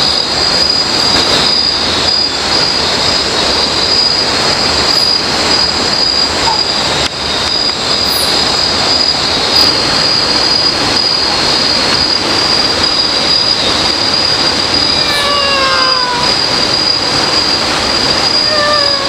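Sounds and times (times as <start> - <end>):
constant hiss: 0.0 - 19.0
insects shrilling: 14.2 - 19.0
short falling call: 14.9 - 16.6, 18.2 - 19.0.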